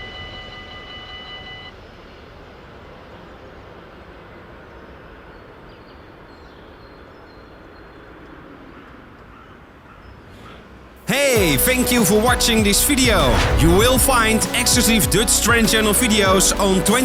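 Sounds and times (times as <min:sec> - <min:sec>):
level crossing warning bells: 0:00.0 - 0:01.7
outdoor background noise: 0:00.0 - 0:11.4
passing train: 0:00.0 - 0:17.0.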